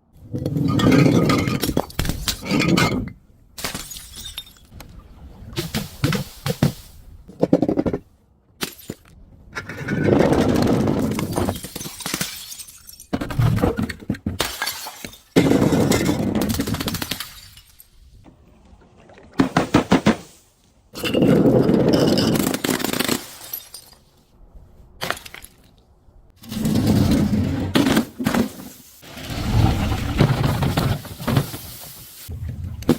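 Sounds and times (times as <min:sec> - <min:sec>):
glass bottles breaking: 0:03.6 - 0:04.7, 0:11.3 - 0:13.2, 0:14.4 - 0:17.9.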